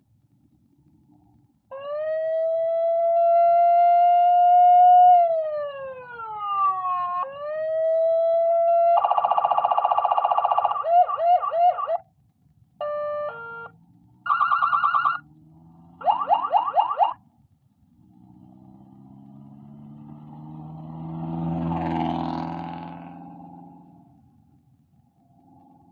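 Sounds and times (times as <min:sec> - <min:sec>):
electronic siren tones: 0:01.7 - 0:12.0, 0:12.8 - 0:15.3, 0:16.0 - 0:17.2
rapid siren chirps: 0:01.7 - 0:12.0, 0:12.8 - 0:15.3, 0:15.9 - 0:17.2.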